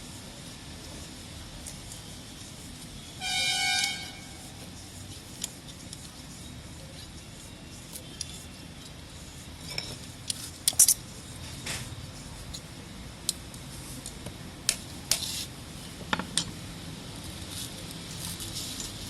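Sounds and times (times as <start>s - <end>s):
vehicle horn toot: 3.2s - 4.4s.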